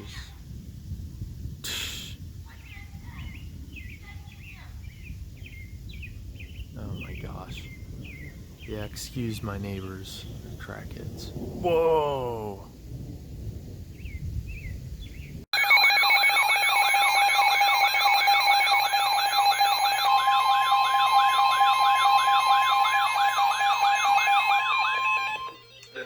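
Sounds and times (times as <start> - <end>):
thunderstorm: 0.0 - 15.5
steady alert tone: 15.6 - 25.7
warbling alert siren: 15.6 - 26.0.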